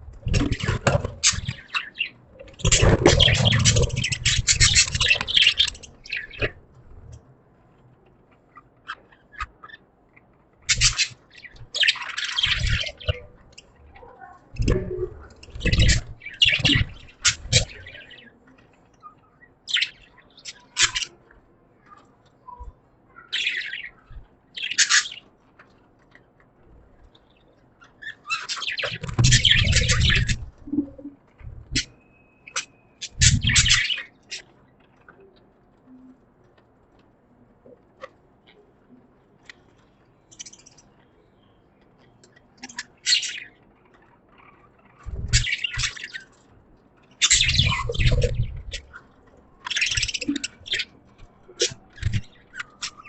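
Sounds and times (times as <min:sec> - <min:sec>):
budgerigars chirping and chattering: 0:00.2 - 0:07.2, 0:08.5 - 0:26.2, 0:27.0 - 0:35.5, 0:39.4 - 0:53.0.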